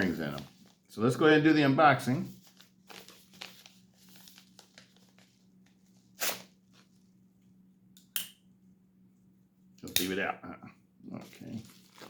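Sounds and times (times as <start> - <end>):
faint steady hum: 0.0 - 12.0
loud paper rips: 6.1 - 6.6
packaging tearing and crinkling: 6.2 - 6.6, 11.4 - 12.0.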